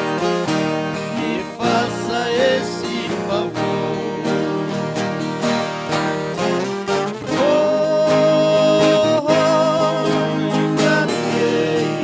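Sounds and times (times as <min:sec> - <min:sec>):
plucked guitar strings: 0:00.0 - 0:12.0
person singing a long held note: 0:07.3 - 0:12.0.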